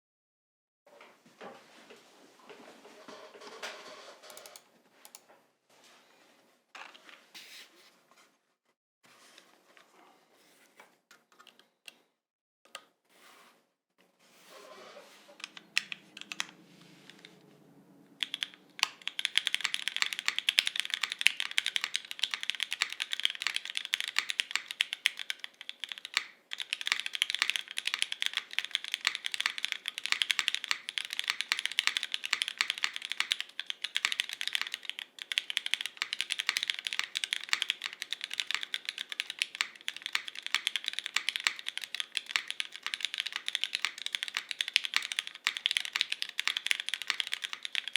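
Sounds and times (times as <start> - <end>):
fast mechanical keyboard typing: 4.3 - 4.6, 15.4 - 17.4, 18.1 - 47.9.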